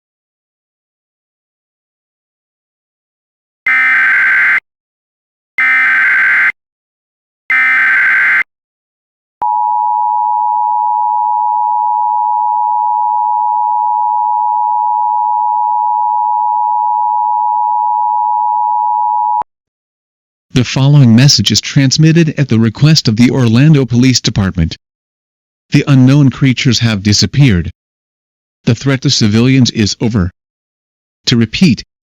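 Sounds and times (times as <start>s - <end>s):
screeching digital data bursts: 7.5s - 8.4s.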